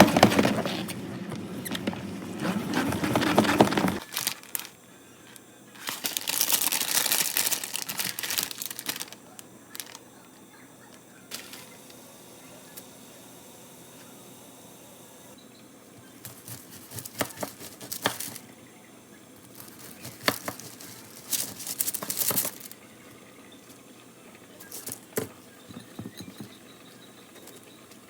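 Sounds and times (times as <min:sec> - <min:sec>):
crinkling and crackling handling: 0:00.0 - 0:12.0, 0:16.0 - 0:18.5, 0:19.4 - 0:26.5.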